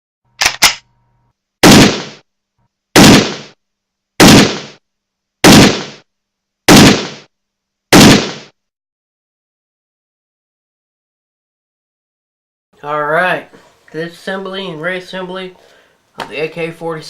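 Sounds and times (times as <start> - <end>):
quick clicks: 0.4 - 0.8
gunshots with ringing tail: 1.6 - 2.2, 3.0 - 3.6, 4.2 - 4.8, 5.4 - 6.0, 6.7 - 7.3, 8.0 - 8.5.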